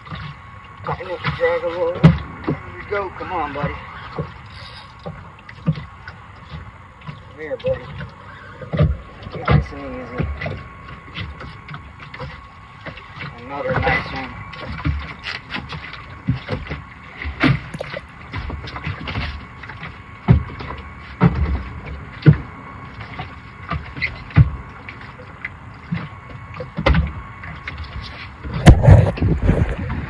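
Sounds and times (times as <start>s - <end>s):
faint steady hum: 0.0s - 30.0s
knocks and thumps: 25.9s - 27.2s, 28.4s - 30.0s.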